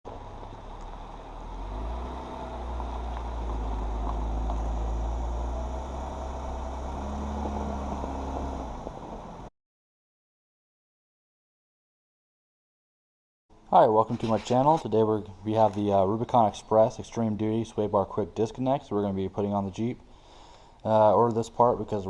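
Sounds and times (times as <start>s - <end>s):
car engine rumbling: 0.0s - 9.5s.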